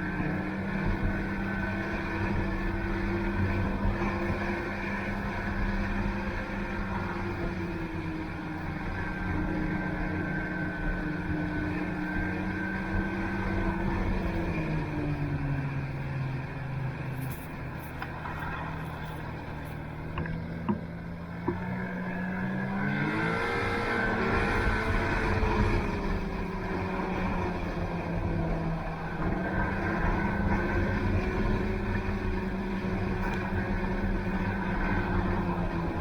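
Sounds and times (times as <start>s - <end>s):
snowmobile engine running: 0.0s - 36.0s.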